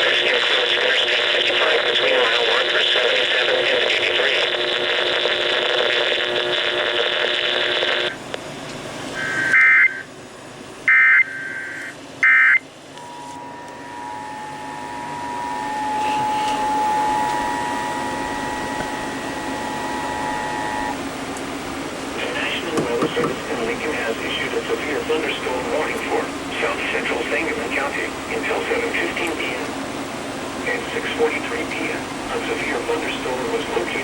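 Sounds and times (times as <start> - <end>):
radio static: 0.0 - 8.3, 9.2 - 10.1, 10.9 - 21.2, 22.0 - 29.7, 30.6 - 34.0
steady two-tone attention signal: 9.2 - 10.1, 10.9 - 21.0
warbling data bursts: 10.9 - 21.0.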